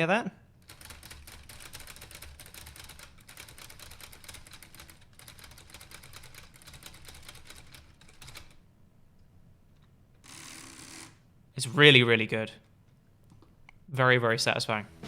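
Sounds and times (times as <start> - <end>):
typewriter carriage ticking clicks: 0.6 - 8.6.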